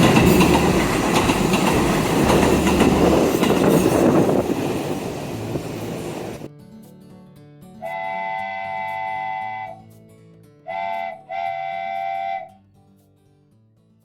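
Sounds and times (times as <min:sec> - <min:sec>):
chord-like whistle blasts: 0:07.8 - 0:09.8, 0:10.7 - 0:12.6.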